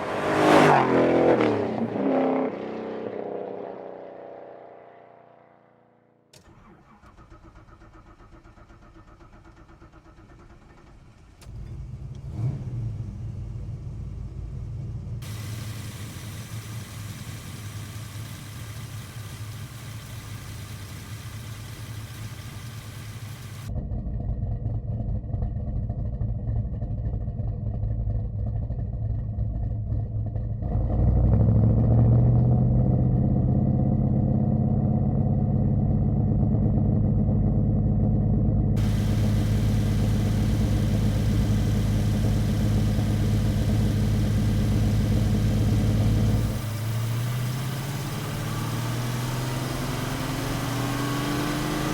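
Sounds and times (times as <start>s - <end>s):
car engine running: 9.0s - 23.7s, 38.3s - 51.9s.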